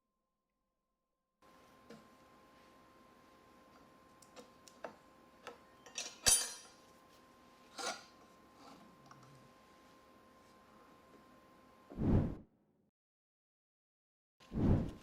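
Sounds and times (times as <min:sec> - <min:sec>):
faint electrical hum: 0:01.4 - 0:12.4.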